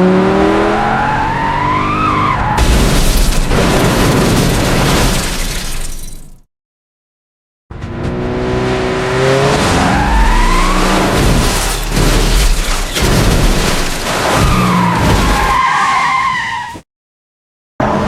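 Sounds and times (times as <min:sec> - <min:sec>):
car engine revving: 0:00.0 - 0:02.2, 0:07.7 - 0:14.7
sharp crash hits: 0:10.1 - 0:15.4.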